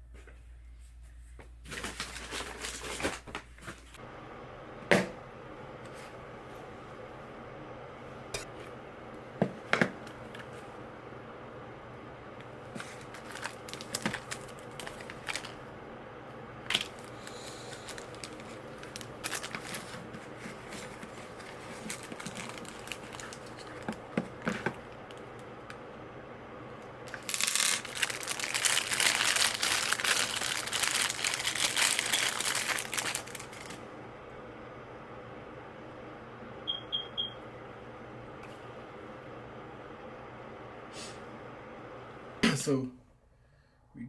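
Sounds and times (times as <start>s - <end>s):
packaging crinkling and tearing: 1.7s - 3.5s, 12.8s - 15.6s, 16.7s - 25.4s, 27.0s - 33.8s.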